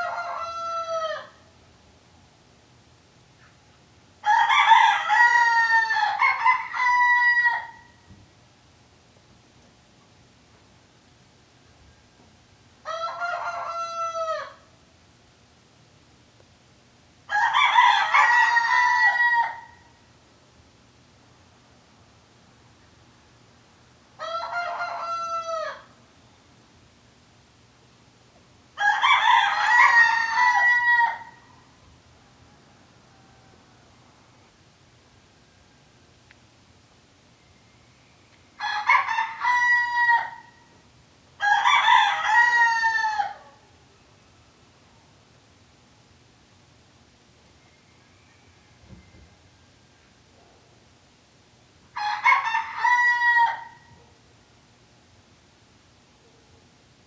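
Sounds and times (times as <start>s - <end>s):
rooster crowing: 0.0s - 1.4s, 4.2s - 8.0s, 12.8s - 14.7s, 17.3s - 19.9s, 24.2s - 26.0s, 28.8s - 31.6s, 32.4s - 34.0s, 38.6s - 40.7s, 41.4s - 43.6s, 47.6s - 50.2s, 51.9s - 54.0s.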